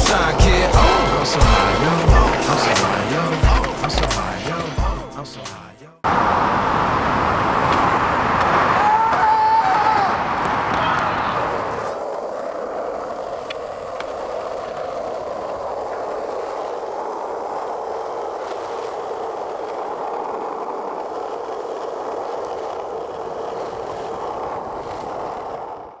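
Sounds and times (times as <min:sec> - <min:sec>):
skateboard wheels rolling on pavement: 0:00.0 - 0:26.0.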